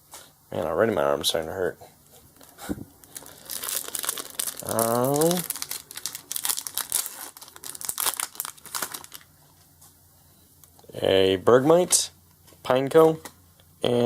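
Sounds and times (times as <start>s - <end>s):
foil wrappers crinkling and tearing: 2.3s - 9.3s.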